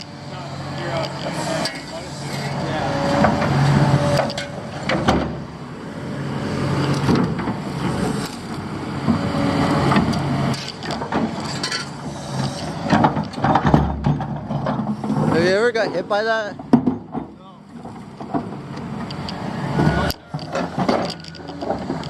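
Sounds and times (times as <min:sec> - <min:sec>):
hydraulic whine: 0:00.0 - 0:15.6, 0:17.7 - 0:22.0
excavator diesel engine: 0:00.0 - 0:22.0
metal clanks and knocks: 0:00.8 - 0:05.5, 0:09.9 - 0:22.0.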